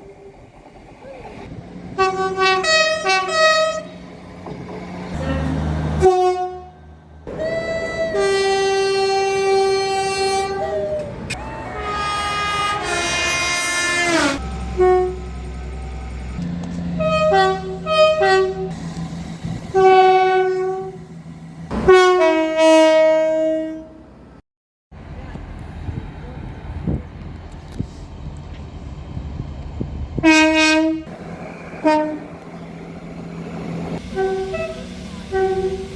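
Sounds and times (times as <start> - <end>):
train horn blasts: 2.0 - 4.0, 5.2 - 6.8, 7.5 - 16.1, 16.9 - 18.8, 19.6 - 21.0, 21.7 - 24.1, 30.2 - 31.1, 31.8 - 32.6, 34.0 - 35.9.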